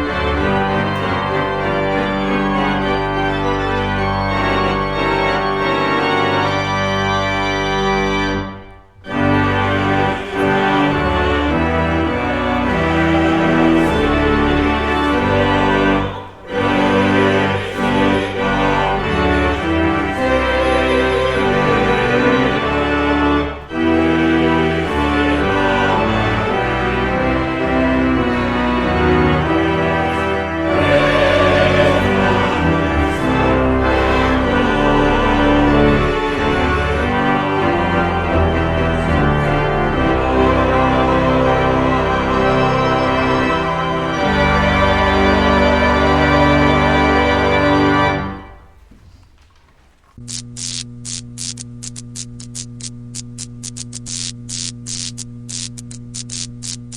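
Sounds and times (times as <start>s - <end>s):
church organ chords: 0.0s - 49.3s
electrical mains hum: 48.4s - 56.9s
static crackle: 48.8s - 56.9s.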